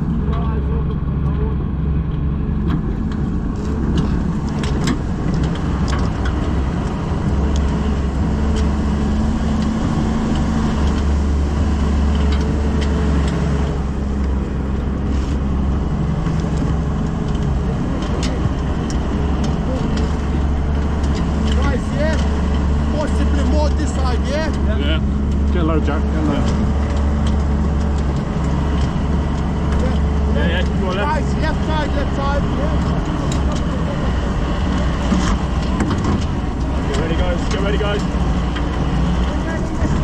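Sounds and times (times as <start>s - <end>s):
road noise: 0.0s - 40.0s
truck engine running: 0.0s - 40.0s.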